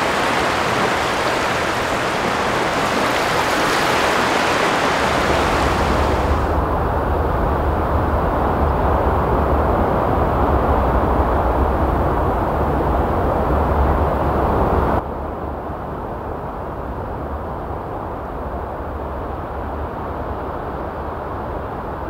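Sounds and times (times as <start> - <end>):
waves breaking on beach: 0.0 - 6.7.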